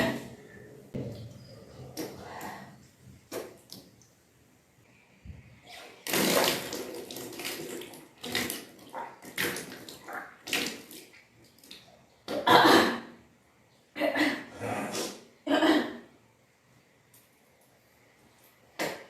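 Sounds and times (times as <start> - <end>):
person vomiting water: 14.2 - 16.0.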